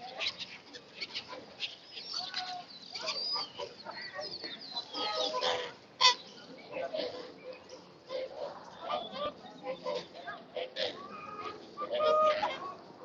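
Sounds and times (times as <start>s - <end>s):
waterbirds squawking: 0.1s - 6.4s.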